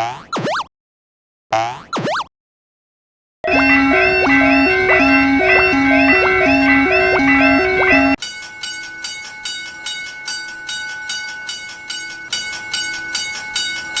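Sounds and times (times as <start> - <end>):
looping electronic tune: 3.4 - 8.2
level crossing warning bell: 3.4 - 14.0.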